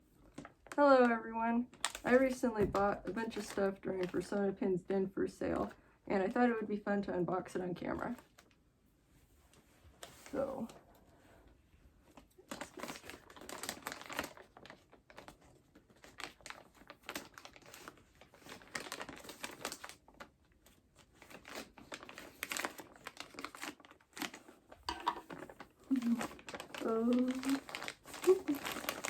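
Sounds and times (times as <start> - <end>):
packaging crinkling and rustling: 0.2 - 0.8, 1.7 - 4.3, 9.5 - 10.8, 12.0 - 29.0.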